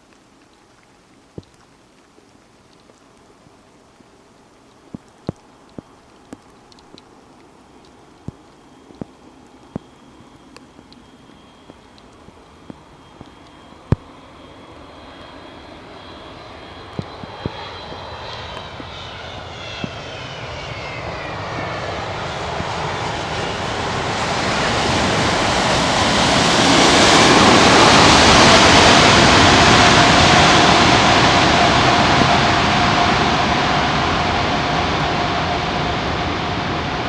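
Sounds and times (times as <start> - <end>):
jet airliner engines whining: 8.3 - 37.0.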